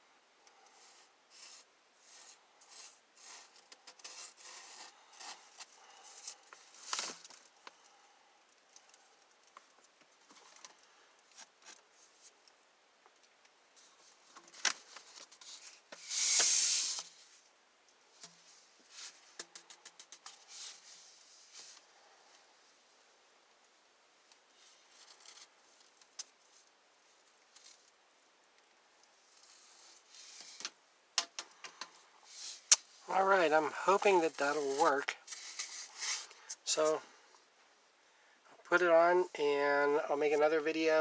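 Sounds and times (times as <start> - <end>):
short hiss: 16.0 - 17.3.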